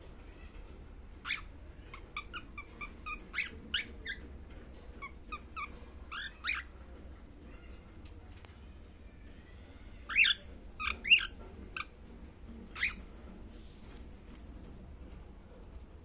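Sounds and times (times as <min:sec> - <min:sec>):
cockatiel squeaky chirps: 0:01.2 - 0:04.3, 0:05.0 - 0:06.8, 0:10.0 - 0:11.9, 0:12.7 - 0:13.0.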